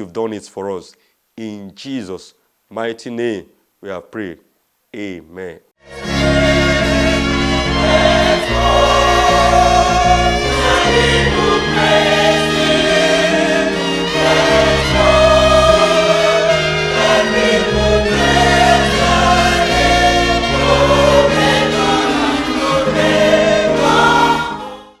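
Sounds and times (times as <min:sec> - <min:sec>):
gospel choir singing: 0:05.9 - 0:25.0.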